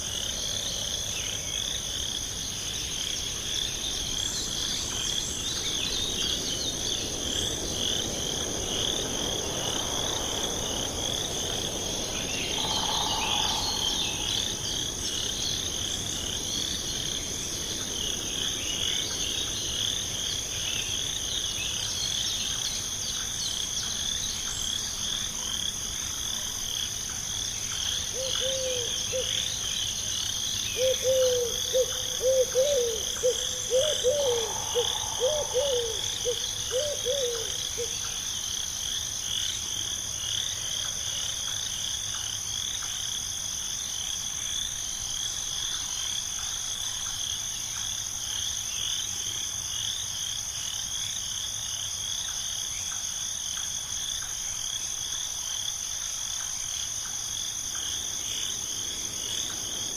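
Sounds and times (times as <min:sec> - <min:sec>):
frogs chirping: 0:00.0 - 0:43.2
high insect trill: 0:00.0 - 0:59.9
owl hooting: 0:12.3 - 0:15.2, 0:28.1 - 0:29.3, 0:30.8 - 0:38.0.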